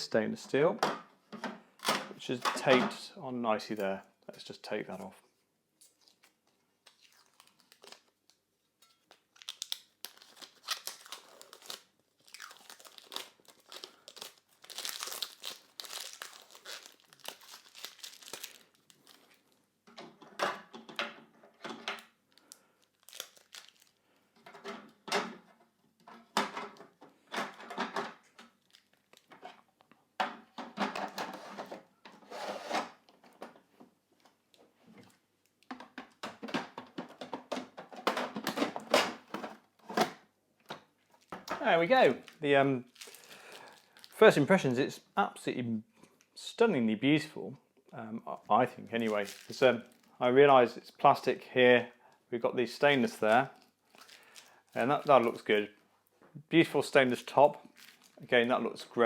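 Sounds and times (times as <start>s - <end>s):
plastic film peeling and crinkling: 5.8s - 19.6s, 22.0s - 24.0s, 28.1s - 29.4s, 41.0s - 44.3s, 48.6s - 50.3s, 52.8s - 55.6s, 57.0s - 58.3s.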